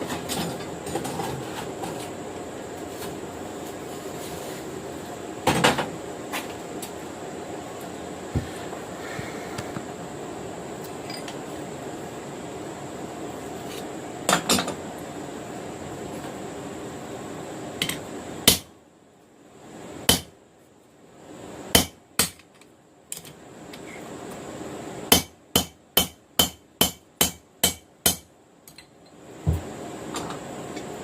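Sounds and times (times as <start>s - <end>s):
hammer striking steel on anvil: 25.1s - 28.3s.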